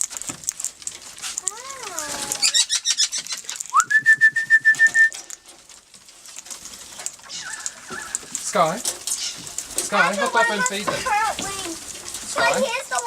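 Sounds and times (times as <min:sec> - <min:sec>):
parrots chattering: 0:00.9 - 0:03.8, 0:06.9 - 0:13.0
rising whistle: 0:03.7 - 0:05.2.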